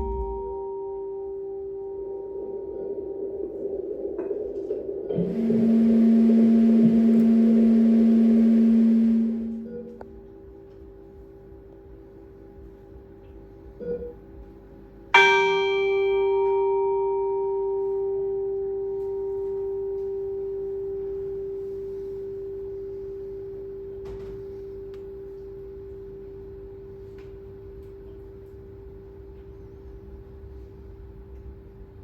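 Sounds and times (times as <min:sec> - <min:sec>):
metal bell ringing: 0:15.2 - 0:21.8.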